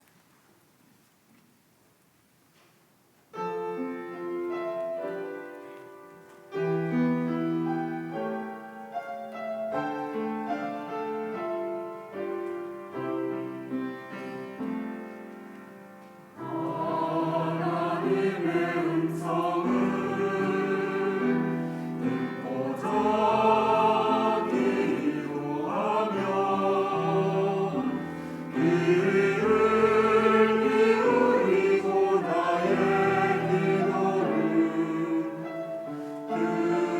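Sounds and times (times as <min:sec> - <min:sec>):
piano chords: 0:03.3 - 0:36.9
choir singing a hymn: 0:16.3 - 0:36.9.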